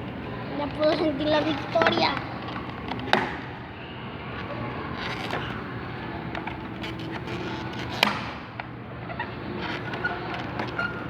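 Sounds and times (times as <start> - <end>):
cardboard and plastic rustling: 0.0 - 8.4.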